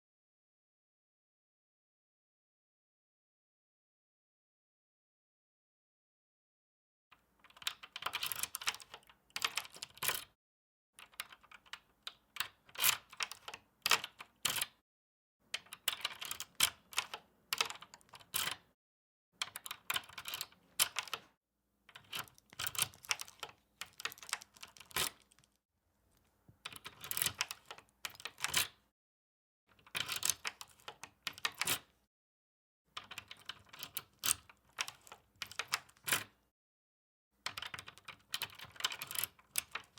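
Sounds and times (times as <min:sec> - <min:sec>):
key turning in door lock: 0:07.4 - 0:10.3, 0:11.0 - 0:14.8, 0:19.4 - 0:25.5, 0:26.6 - 0:28.8, 0:29.7 - 0:31.9, 0:32.9 - 0:36.4, 0:37.4 - 0:39.9.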